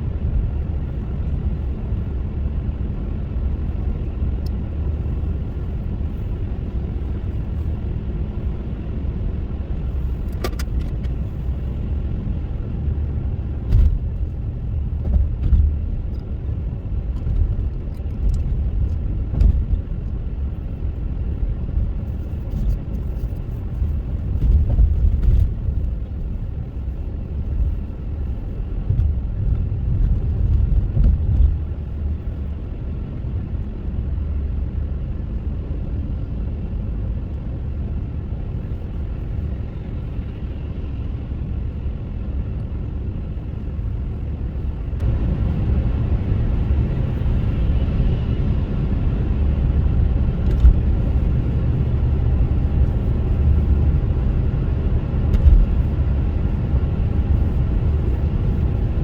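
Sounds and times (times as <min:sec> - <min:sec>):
car engine and road noise: 0:00.0 - 0:59.0.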